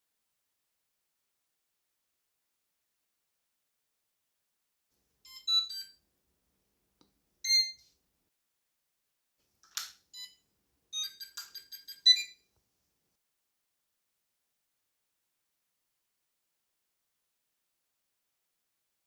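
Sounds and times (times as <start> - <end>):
phone chime jingle: 5.3 - 6.0, 11.0 - 12.4
high beeps: 11.0 - 12.4.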